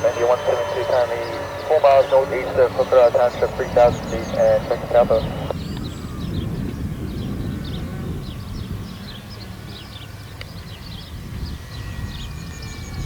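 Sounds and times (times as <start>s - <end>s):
small birds chirping: 0.0s - 6.6s
wind rumbling on microphone: 0.0s - 13.0s.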